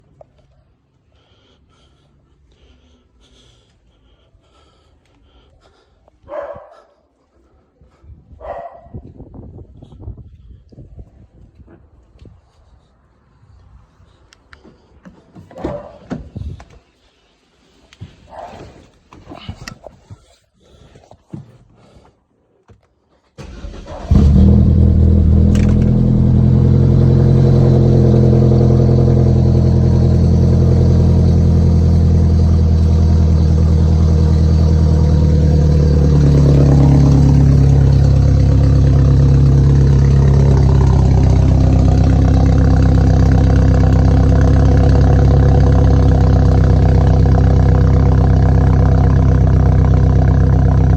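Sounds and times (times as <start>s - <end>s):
car engine starting and idling: 23.4s - 50.9s.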